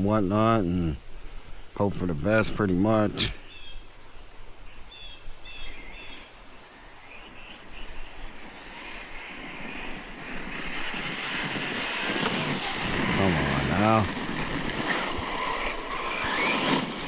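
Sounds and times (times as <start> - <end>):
birds chirping: 1.8 - 10.9
rc truck motor whine: 8.3 - 17.0.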